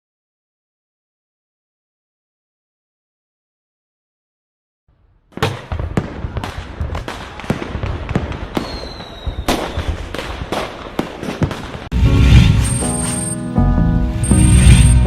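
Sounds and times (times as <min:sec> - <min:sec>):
fireworks bangs and pops: 0:05.3 - 0:13.3
fireworks crackle: 0:05.4 - 0:13.6, 0:14.2 - 0:15.0
faint firework whistle: 0:08.6 - 0:09.8.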